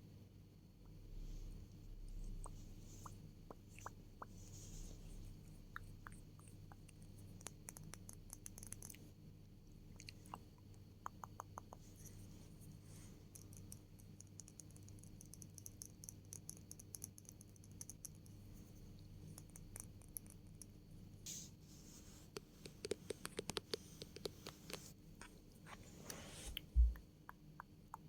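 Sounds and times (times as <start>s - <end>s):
close clicks and taps: 22.3s - 24.9s.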